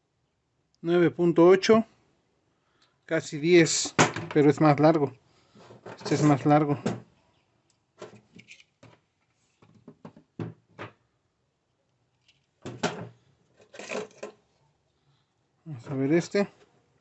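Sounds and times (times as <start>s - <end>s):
clicks and knocks of handling wires: 3.8s - 4.6s, 5.6s - 11.0s, 11.9s - 14.4s.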